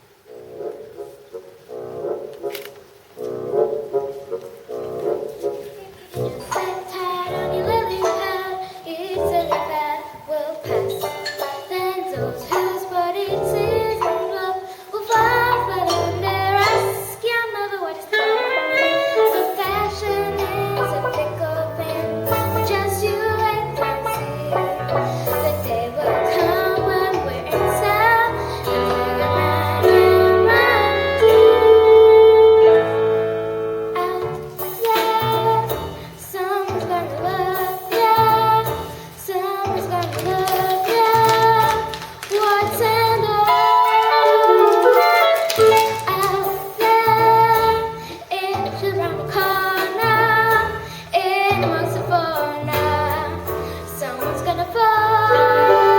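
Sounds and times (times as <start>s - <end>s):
instrumental accompaniment: 0.0s - 55.9s
young people singing: 6.1s - 18.5s, 19.2s - 32.1s, 34.0s - 55.9s.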